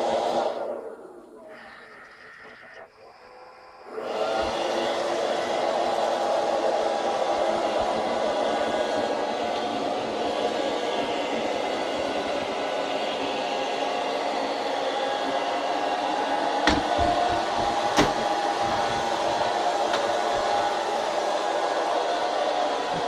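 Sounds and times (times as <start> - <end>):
robot vacuum motor whirring: 3.9 - 23.0
sharp knocks: 16.6 - 19.1.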